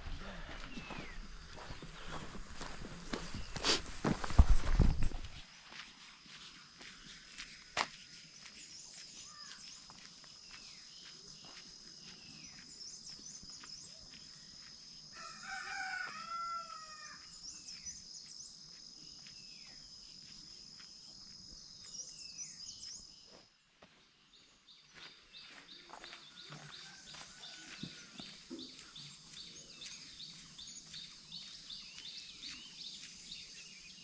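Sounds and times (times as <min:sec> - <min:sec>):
small birds chirping: 0:00.0 - 0:34.0
rooster crowing: 0:15.1 - 0:17.2, 0:26.6 - 0:28.4.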